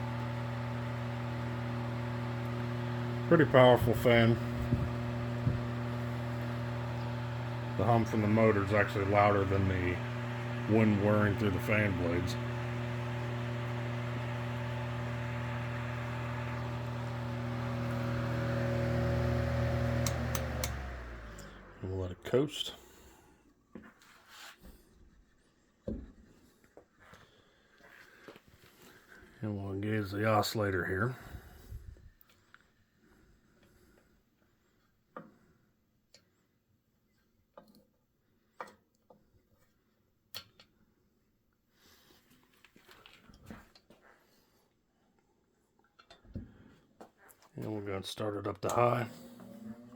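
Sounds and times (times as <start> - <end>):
fan motor hum: 0.0 - 22.4, 48.6 - 49.9
wind whirring through fan blades: 3.8 - 5.6
fan oscillator clicks: 19.7 - 21.5.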